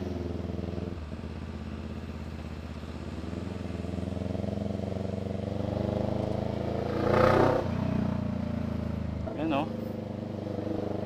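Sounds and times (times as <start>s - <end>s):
loud motorcycle exhaust: 3.2s - 9.1s.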